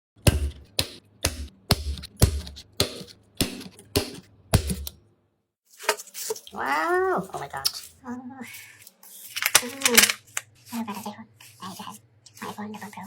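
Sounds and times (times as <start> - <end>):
sharp knocks with low thuds: 0.2 - 4.9.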